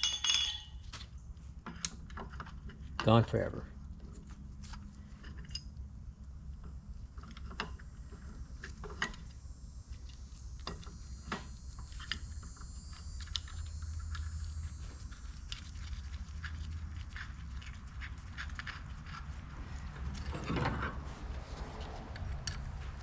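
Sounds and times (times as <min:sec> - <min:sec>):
hand tools clinking on metal: 0:00.0 - 0:00.8
steady low hum: 0:00.0 - 0:23.0.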